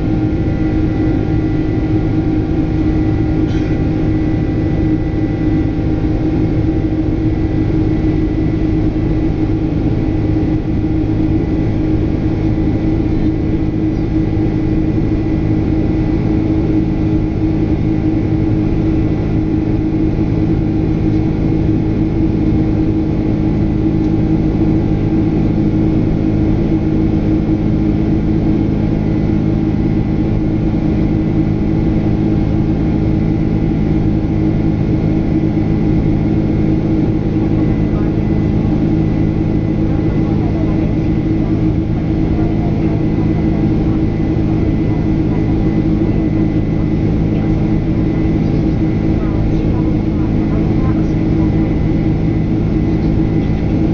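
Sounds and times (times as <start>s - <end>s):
faint high whine: 0.0s - 6.5s
jet engine cabin roar: 0.0s - 53.9s.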